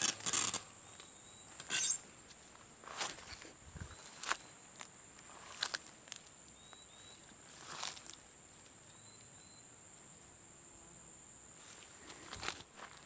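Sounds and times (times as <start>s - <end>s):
high-pitched insect drone: 0.0s - 2.1s
steps in dry undergrowth: 0.0s - 8.3s, 11.6s - 13.0s.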